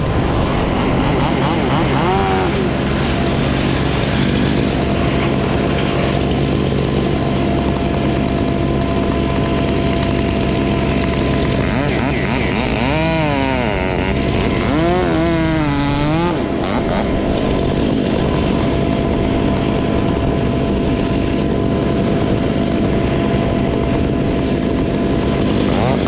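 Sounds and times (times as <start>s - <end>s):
chainsaw revving: 0.0s - 19.5s, 25.3s - 26.0s
engine running steadily: 0.0s - 26.0s.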